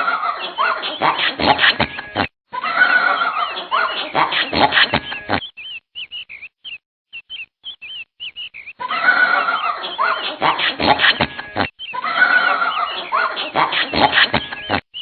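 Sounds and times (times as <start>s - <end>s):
flock of birds calling: 0.0s - 15.0s
bird chirps: 3.1s - 15.0s.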